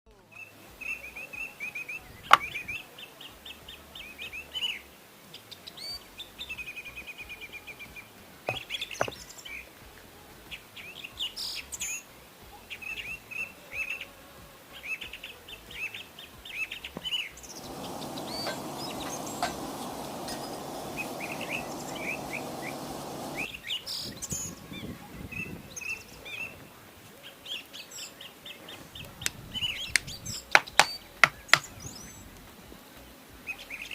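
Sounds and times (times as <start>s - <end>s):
small birds twittering: 15.8s - 23.6s
steady low noise: 17.5s - 23.5s.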